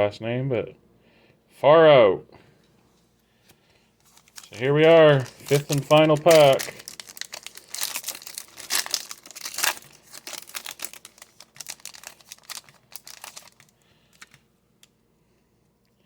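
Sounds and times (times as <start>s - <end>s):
plastic wrapper tearing and crinkling: 4.0s - 14.9s.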